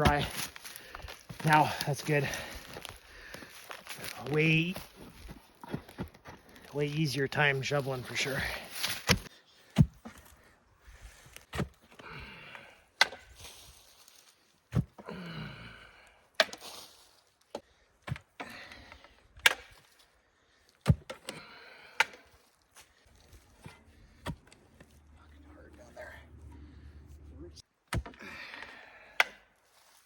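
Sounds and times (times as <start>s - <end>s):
dirt scraping rustle: 0.0s - 9.3s.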